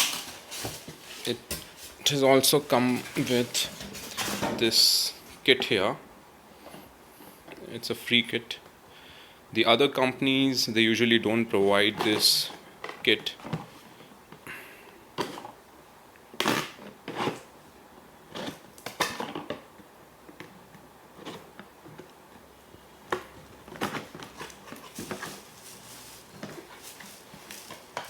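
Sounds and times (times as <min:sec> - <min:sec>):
packaging rustling: 0:00.0 - 0:04.7, 0:23.1 - 0:28.0
plastic cookware clicks and clatters: 0:18.4 - 0:19.7.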